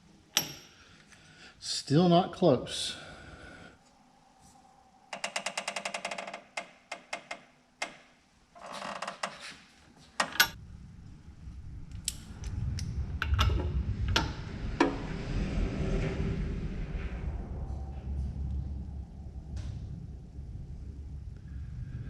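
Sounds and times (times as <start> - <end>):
hand tools clicking and knocking: 10.2 - 10.6
low rumble: 10.6 - 22.0.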